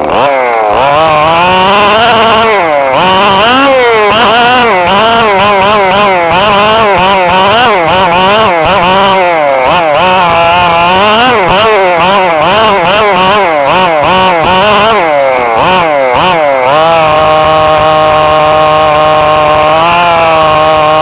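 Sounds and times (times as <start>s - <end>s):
rc car motors whining: 1.4s - 9.2s.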